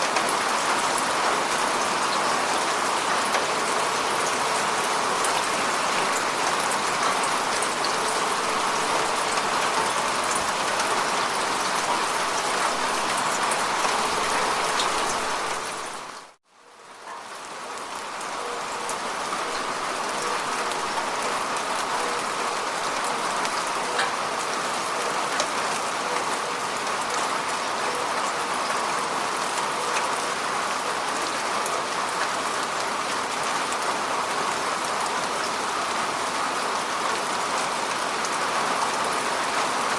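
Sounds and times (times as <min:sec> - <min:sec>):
rain falling on water: 0:00.0 - 0:39.9.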